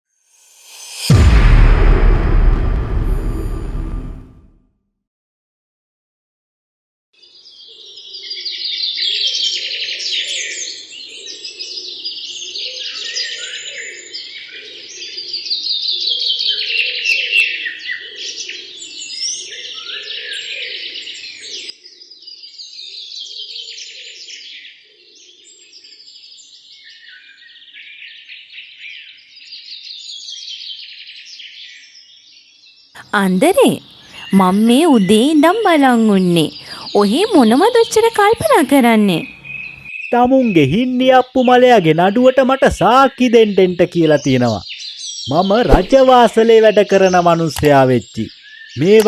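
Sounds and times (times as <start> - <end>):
small birds chirping and singing: 7.2 - 49.0
low bird warbling: 33.1 - 40.8.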